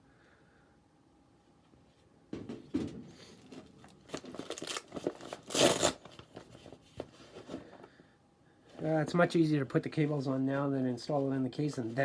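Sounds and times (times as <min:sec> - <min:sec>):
packaging rustling and crinkling: 0:03.4 - 0:07.9.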